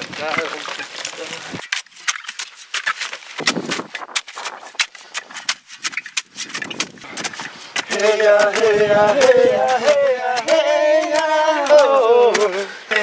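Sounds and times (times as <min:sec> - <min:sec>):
chopping plant material: 0:00.0 - 0:13.0
voices singing slow chant: 0:07.9 - 0:13.0.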